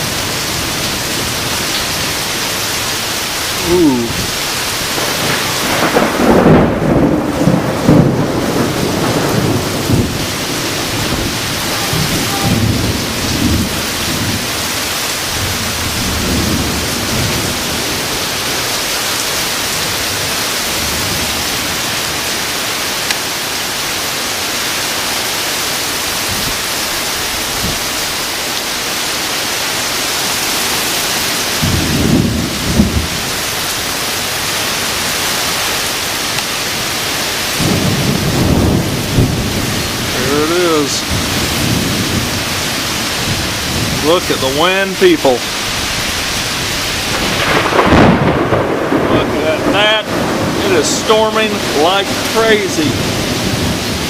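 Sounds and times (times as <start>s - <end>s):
heavy rain pouring: 0.0s - 54.0s
rolling thunder rumble: 3.5s - 21.8s, 31.5s - 33.6s, 37.6s - 44.3s, 45.4s - 54.0s.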